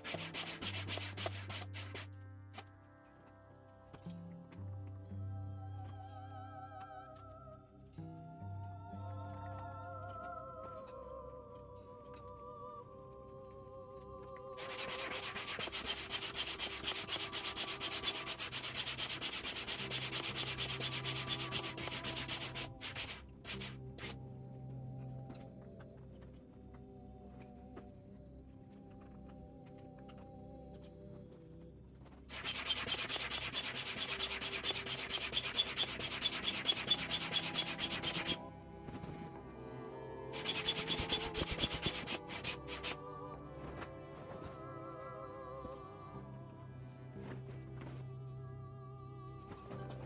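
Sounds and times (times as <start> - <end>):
hand pump strokes: 0.0 - 2.1, 14.6 - 24.2, 32.3 - 39.2, 40.4 - 43.0.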